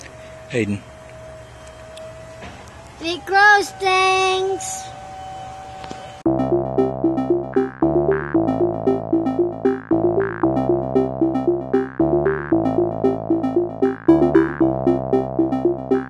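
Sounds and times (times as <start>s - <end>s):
repeating note pattern over low notes: 6.3s - 16.0s.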